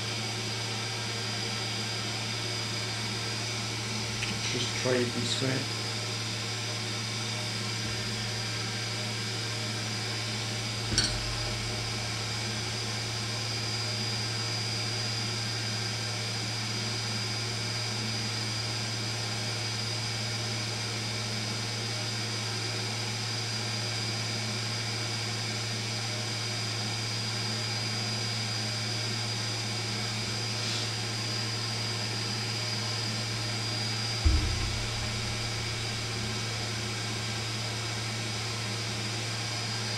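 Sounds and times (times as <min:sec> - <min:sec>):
extractor fan humming: 0:03.9 - 0:13.4, 0:32.8 - 0:38.8.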